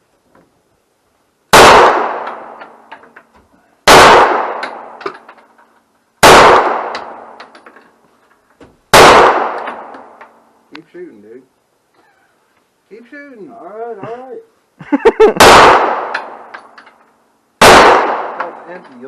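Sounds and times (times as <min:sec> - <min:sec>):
pistol shots echoing: 0:01.5 - 0:02.8, 0:03.9 - 0:05.2, 0:06.2 - 0:07.5, 0:08.9 - 0:10.2, 0:15.4 - 0:16.6, 0:17.6 - 0:18.6.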